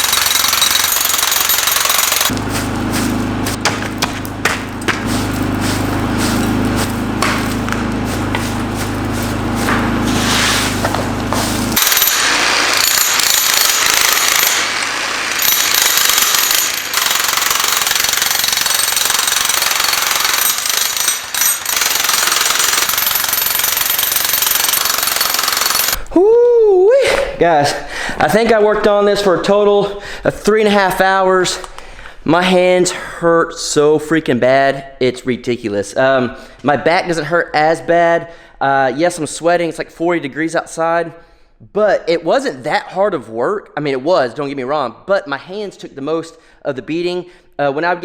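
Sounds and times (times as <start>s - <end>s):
jackhammer breaking concrete: 0.0s - 10.2s, 10.8s - 26.0s.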